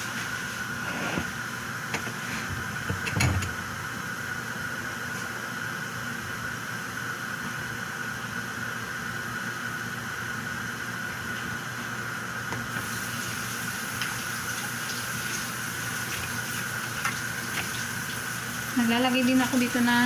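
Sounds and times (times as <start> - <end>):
pan simmering with hiss: 12.6 - 20.0.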